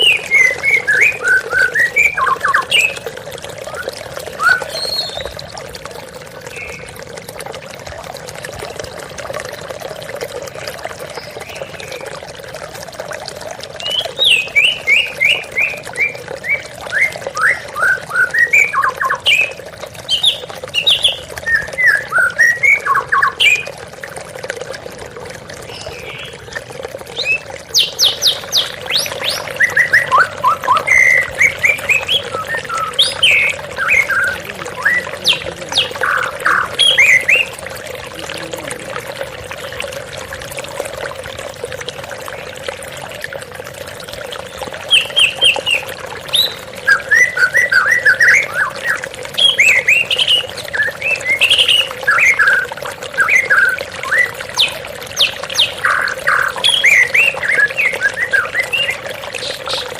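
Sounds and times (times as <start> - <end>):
bird singing: 0.0 - 3.1, 3.8 - 5.4, 27.2 - 37.5
waterfall splashing: 27.2 - 39.4.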